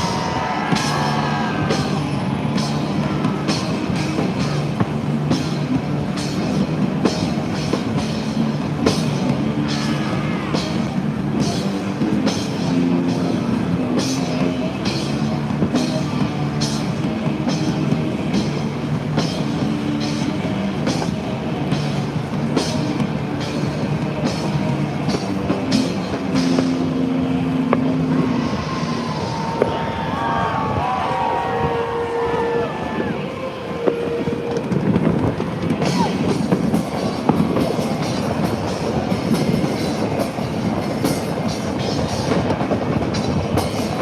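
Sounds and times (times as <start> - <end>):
driving bass line: 0.0 - 30.9
steady drum beat: 0.0 - 30.9, 34.5 - 44.0
rock music: 0.0 - 44.0.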